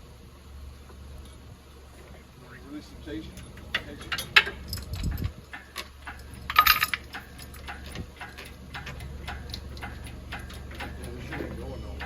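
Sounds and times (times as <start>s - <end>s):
low steady hum: 0.0s - 12.0s
hoist chain clinking: 3.2s - 12.0s.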